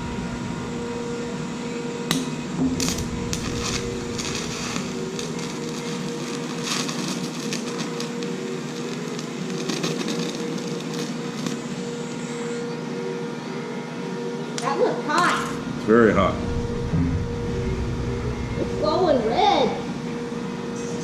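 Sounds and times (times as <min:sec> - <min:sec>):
steady hum: 0:00.0 - 0:08.6, 0:11.4 - 0:21.0
welding arc crackling and sizzling: 0:00.0 - 0:12.6.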